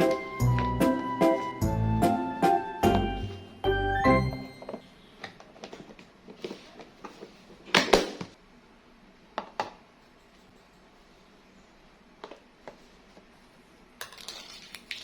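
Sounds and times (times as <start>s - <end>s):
kitchen clatter: 14.0s - 15.0s.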